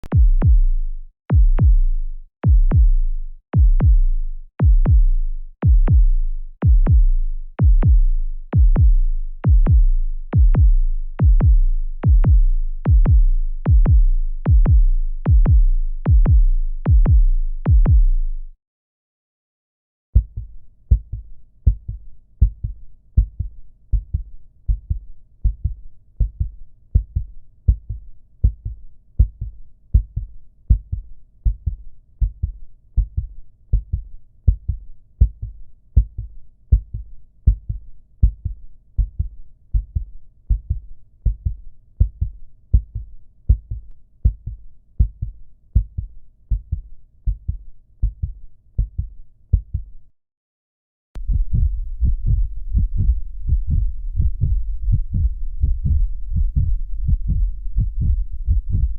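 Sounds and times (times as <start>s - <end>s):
heartbeat: 0.0s - 18.4s, 20.2s - 50.0s, 51.2s - 58.9s.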